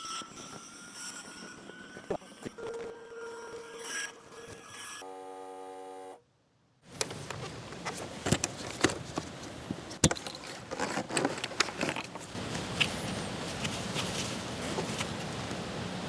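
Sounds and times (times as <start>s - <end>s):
sharp clicks and knocks: 6.9s - 12.9s
background hiss: 11.5s - 16.0s.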